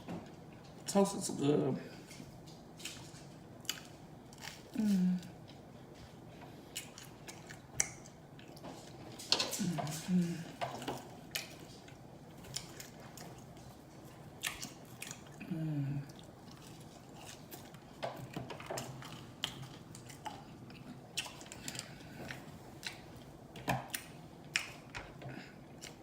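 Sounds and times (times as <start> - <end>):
chewing with wet mouth clicks: 2.8 - 6.1, 6.7 - 10.0, 10.6 - 15.4, 16.1 - 26.0
person humming: 4.8 - 5.3, 9.6 - 10.6, 15.4 - 16.1.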